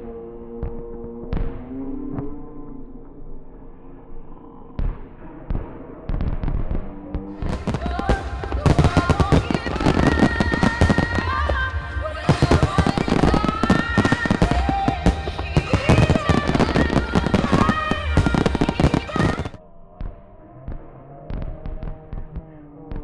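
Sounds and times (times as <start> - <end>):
fireworks bursting and crackling: 6.2 - 19.6
music playing: 7.3 - 19.6.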